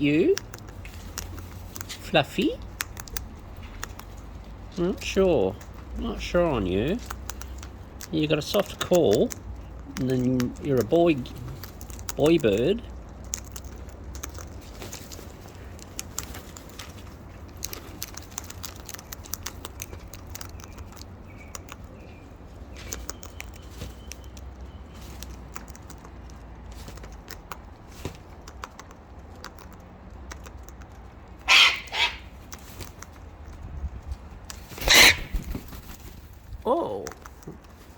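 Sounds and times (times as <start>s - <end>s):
birds pecking clicks: 0.0s - 37.9s
harsh bird squawks: 31.4s - 32.4s, 34.8s - 35.6s.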